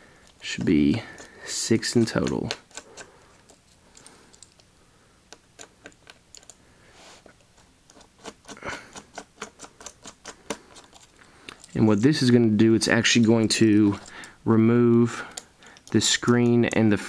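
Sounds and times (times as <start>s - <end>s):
screwdriver clicks and ticks: 2.0s - 3.1s, 5.3s - 6.6s.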